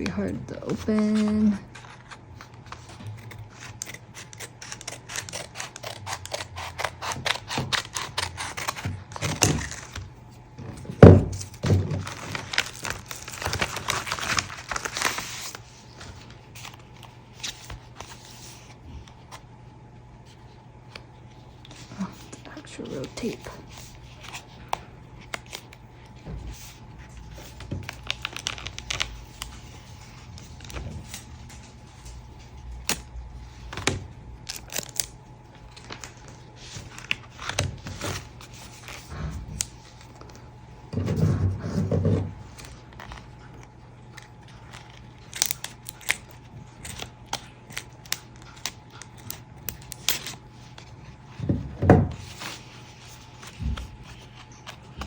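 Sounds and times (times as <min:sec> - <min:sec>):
packaging crinkling: 0:00.0 - 0:19.3, 0:20.3 - 0:41.0, 0:42.0 - 0:51.4
faint steady hum: 0:00.0 - 0:55.0
tape tearing: 0:02.7 - 0:10.0, 0:33.7 - 0:35.1, 0:44.1 - 0:50.8.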